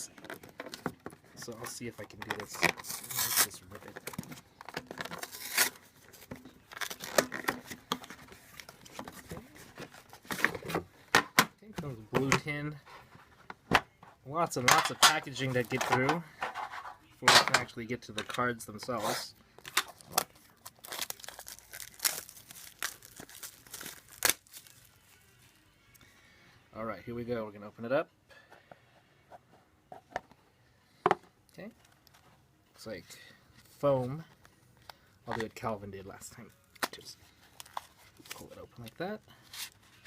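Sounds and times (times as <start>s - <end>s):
packaging tearing and crinkling: 2.2s - 5.9s, 6.7s - 7.8s, 19.7s - 25.2s.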